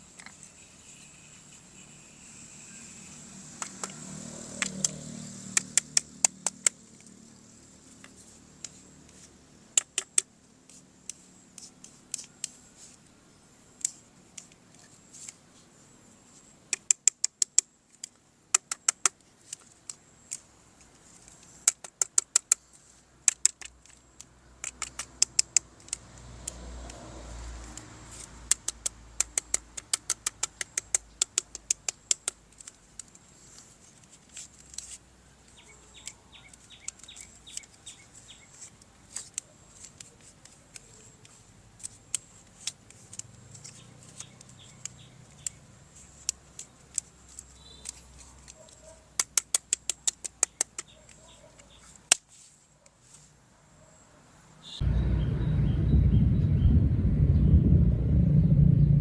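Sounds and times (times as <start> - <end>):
plastic toy parts clicking: 7.9 - 13.0, 13.8 - 15.4, 16.7 - 27.0, 27.6 - 52.4.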